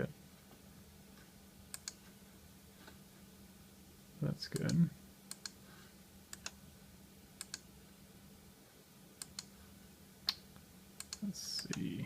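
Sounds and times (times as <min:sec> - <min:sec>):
computer mouse clicks: 0:01.7 - 0:02.0, 0:04.6 - 0:05.6, 0:06.3 - 0:06.6, 0:07.4 - 0:07.6, 0:09.2 - 0:09.5, 0:11.0 - 0:11.8.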